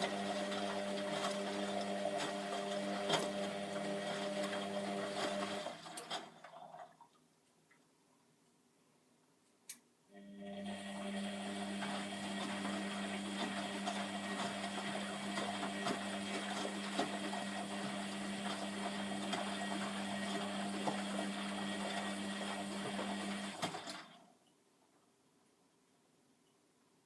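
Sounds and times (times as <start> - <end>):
washing machine pump humming: 0.0 - 6.7, 10.2 - 24.3.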